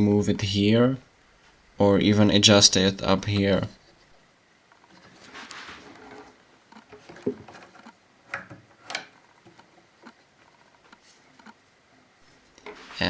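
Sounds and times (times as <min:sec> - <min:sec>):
faint rustling: 0:00.0 - 0:13.0
light clicks and knocks: 0:04.7 - 0:13.0.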